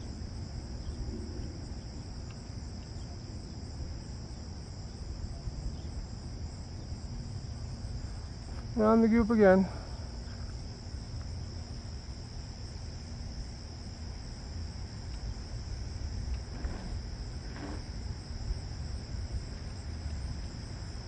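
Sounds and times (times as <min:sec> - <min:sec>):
crickets chirping: 0:00.0 - 0:21.0
wind rumble on microphone: 0:00.0 - 0:21.0.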